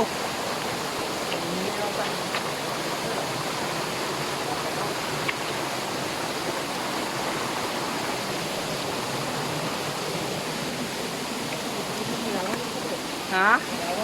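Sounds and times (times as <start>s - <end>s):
stream water rushing: 0.0s - 14.0s.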